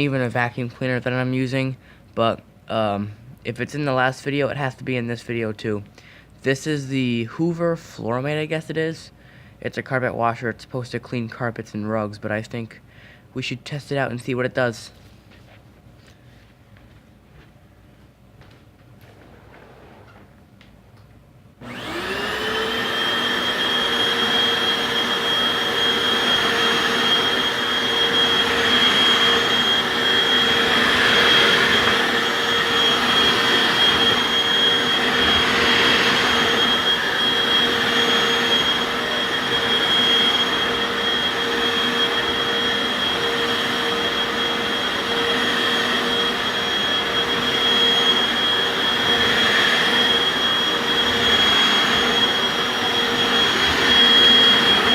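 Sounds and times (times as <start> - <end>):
carpet washer motor whining: 21.6 - 54.9.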